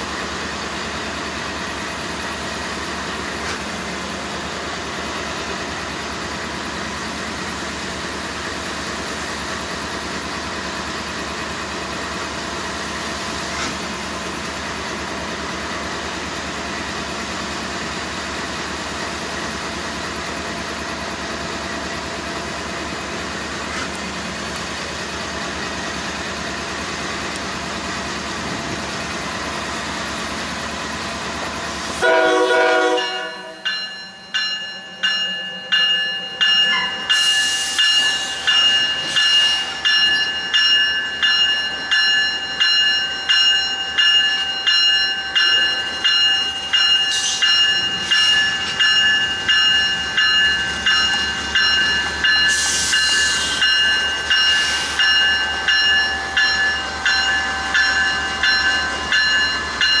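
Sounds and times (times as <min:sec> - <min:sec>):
bell striking: 0:33.0 - 1:00.0
short bursts of hiss: 0:52.5 - 0:53.6.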